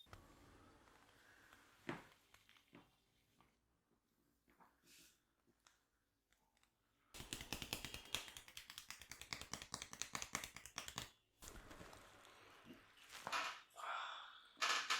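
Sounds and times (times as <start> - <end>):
rapid clicking massage taps: 7.2 - 11.2.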